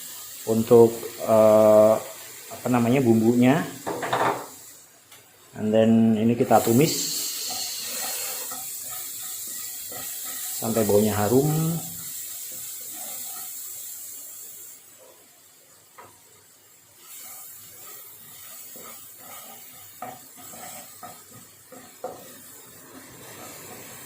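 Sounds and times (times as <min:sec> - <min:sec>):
paste sizzling in a pan: 0:00.0 - 0:24.0
utensil scraping and tapping pan: 0:18.5 - 0:22.4.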